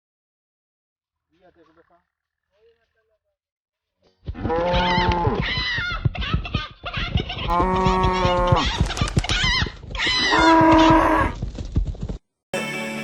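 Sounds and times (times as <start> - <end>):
livestock calling: 4.4 - 5.8, 7.5 - 8.7, 10.0 - 11.4.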